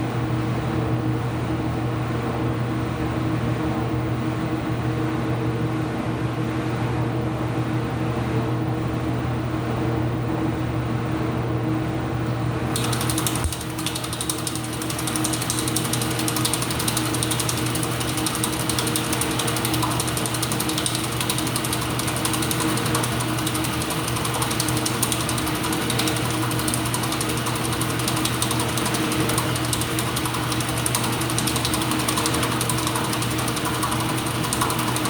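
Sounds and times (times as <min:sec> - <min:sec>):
washing machine motor hum: 0:12.4 - 0:35.0
mechanical clicking and rattling: 0:12.7 - 0:35.0.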